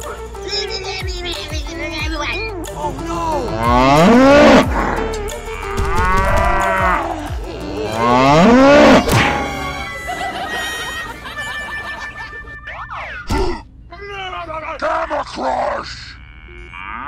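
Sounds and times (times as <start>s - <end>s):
cow mooing: 3.5s - 9.9s, 16.0s - 17.0s.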